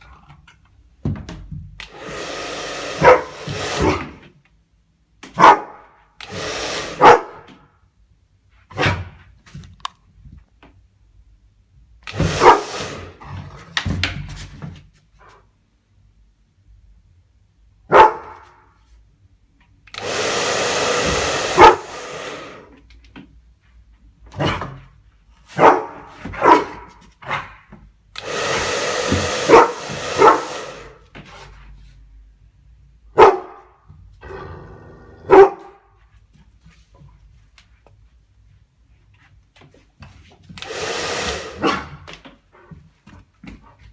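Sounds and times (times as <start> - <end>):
hair dryer blowing: 1.8 - 4.2, 6.2 - 7.2, 12.0 - 13.2, 19.9 - 22.8, 28.2 - 31.1, 40.5 - 41.9
dog barking: 3.0 - 3.4, 5.4 - 6.0, 7.0 - 7.5, 12.4 - 12.7, 17.9 - 18.6, 21.6 - 21.9, 25.6 - 27.6, 29.5 - 30.5, 33.1 - 33.8, 35.3 - 35.9.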